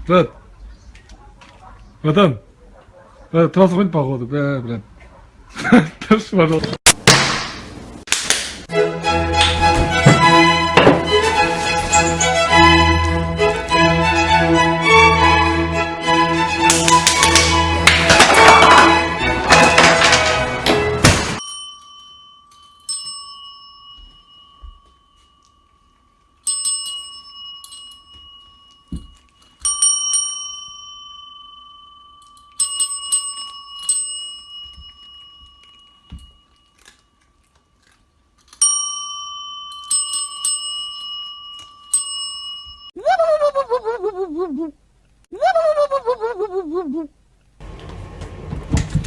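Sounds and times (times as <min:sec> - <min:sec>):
small metal bell ringing: 0:21.4 - 0:43.0.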